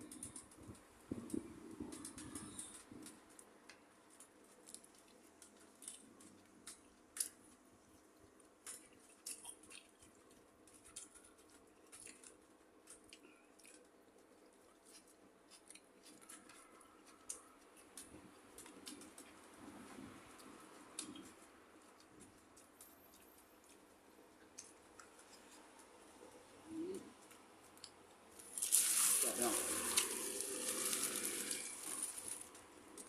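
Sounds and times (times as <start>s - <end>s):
person eating crunchy food: 8.6s - 18.0s, 27.8s - 32.5s.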